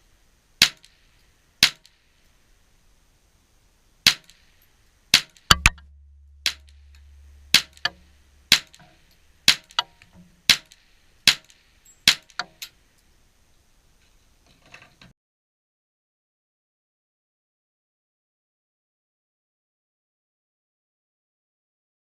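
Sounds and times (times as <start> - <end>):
rifle shots: 6.4 - 8.8.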